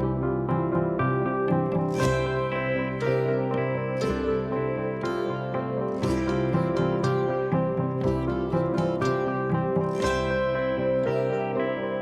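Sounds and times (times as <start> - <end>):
piano playing steady notes: 0.0 - 12.0.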